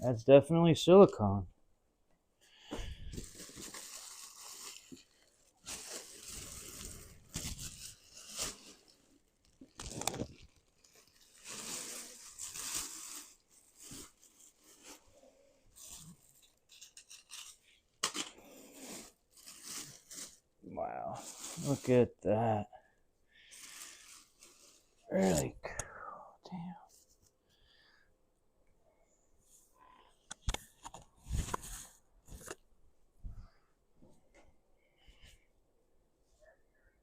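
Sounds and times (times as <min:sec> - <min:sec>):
packaging rustling and crinkling: 0:03.0 - 0:20.5.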